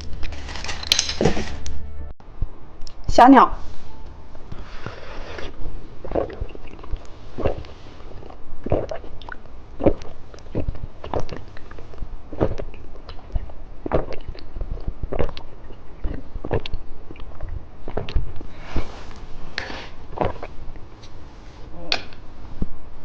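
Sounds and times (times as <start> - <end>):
person chewing candy: 4.5 - 18.6.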